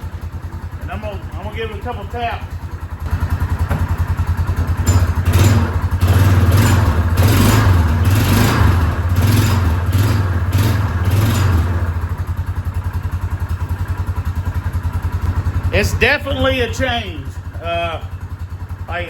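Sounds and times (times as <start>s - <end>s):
engine revving and idling: 0.0s - 19.0s.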